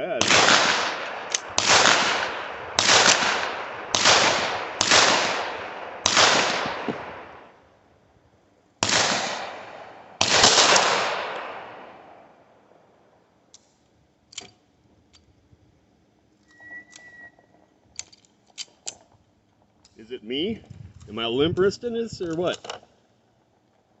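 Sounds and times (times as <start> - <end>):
pistol shots echoing: 0.0 - 7.6, 8.8 - 12.7.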